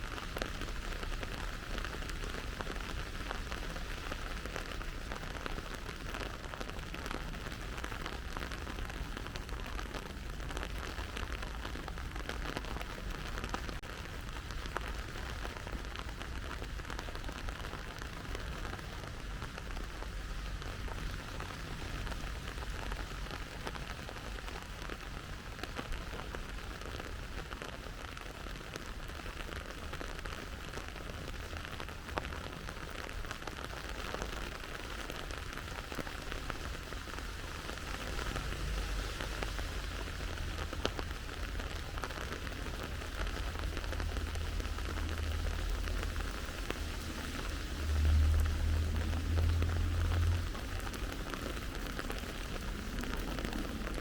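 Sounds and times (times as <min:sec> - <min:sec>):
steady rain falling: 0:00.0 - 0:54.0
low rumble: 0:42.6 - 0:54.0.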